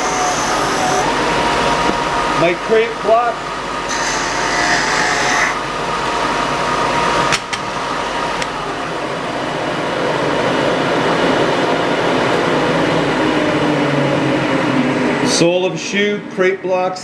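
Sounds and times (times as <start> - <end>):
belt sander and dust collector: 0.0 - 2.4, 3.9 - 5.6.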